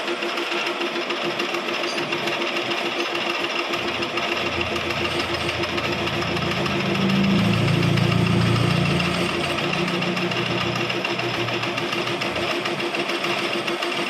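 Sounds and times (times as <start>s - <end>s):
lathe running: 0.1s - 14.0s
low drone: 3.7s - 13.5s
fast pulsing tone: 3.7s - 14.0s.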